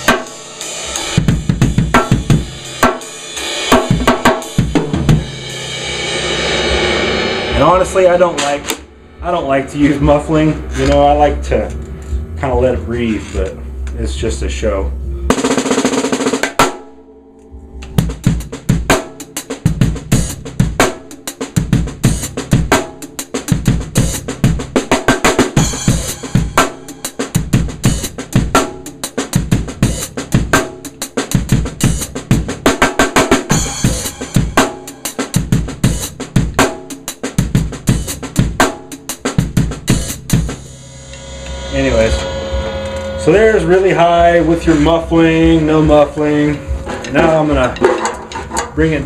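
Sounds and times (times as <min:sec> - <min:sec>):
bass drum: 0:00.0 - 0:03.1, 0:03.7 - 0:05.8, 0:06.5 - 0:16.8, 0:17.6 - 0:49.0
snare drum groove: 0:00.0 - 0:05.5, 0:15.3 - 0:16.8, 0:18.0 - 0:40.6.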